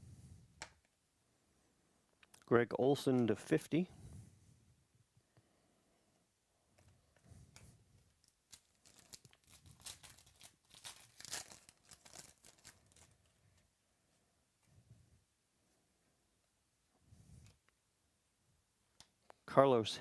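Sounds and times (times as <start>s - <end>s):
wrapper crinkling and tearing: 8.2s - 13.4s.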